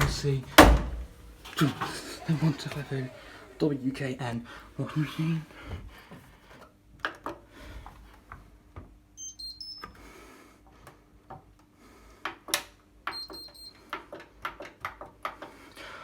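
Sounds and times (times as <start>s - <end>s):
washing machine panel beeping: 9.2s - 9.9s, 13.1s - 13.8s.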